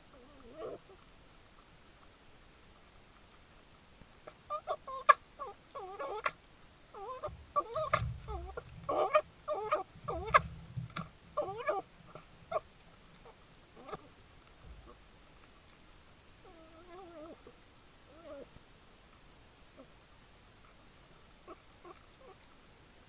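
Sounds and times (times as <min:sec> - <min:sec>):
fox calling: 0:00.0 - 0:01.0, 0:04.2 - 0:14.2, 0:16.4 - 0:18.5, 0:20.7 - 0:22.4
low thuds: 0:07.2 - 0:12.6.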